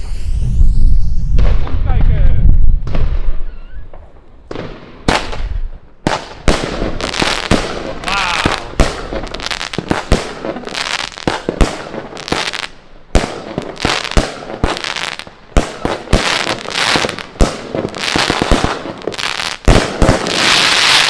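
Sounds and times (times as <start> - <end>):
firework hissing: 0.0 - 1.4, 6.7 - 21.0
firework bangs: 2.8 - 21.0.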